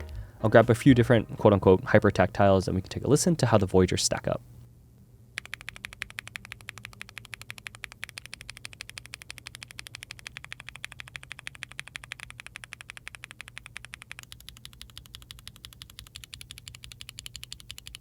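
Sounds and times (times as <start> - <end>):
mechanical keyboard typing clatter: 5.4 - 18.0.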